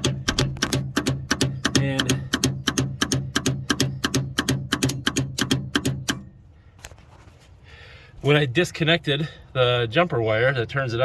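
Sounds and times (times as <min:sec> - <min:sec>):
contactor chattering clicks: 0:00.0 - 0:06.3
electrical hum: 0:00.0 - 0:06.8.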